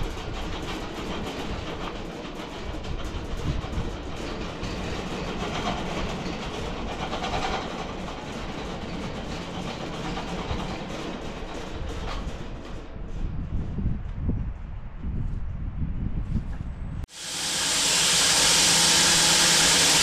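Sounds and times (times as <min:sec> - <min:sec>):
bandsaw cutting log: 0:17.2 - 0:20.0.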